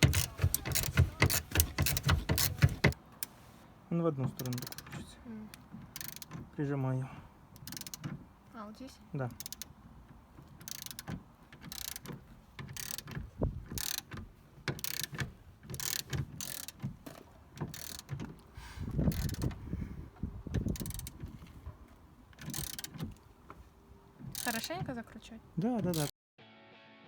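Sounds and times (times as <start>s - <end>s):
ratchet wrench clicking: 0.0s - 3.0s, 4.4s - 4.9s, 5.9s - 6.4s, 7.6s - 8.1s, 9.4s - 9.8s, 10.6s - 18.2s, 19.1s - 19.6s, 20.6s - 21.2s, 22.4s - 23.1s, 24.4s - 24.6s, 25.9s - 26.1s.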